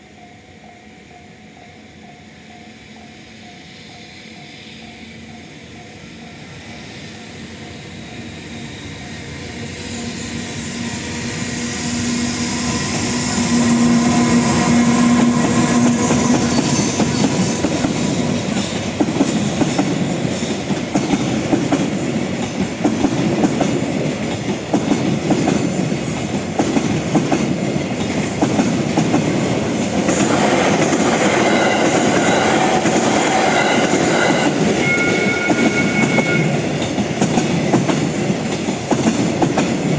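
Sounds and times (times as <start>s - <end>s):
freight train wheels clattering: 9.4s - 39.9s.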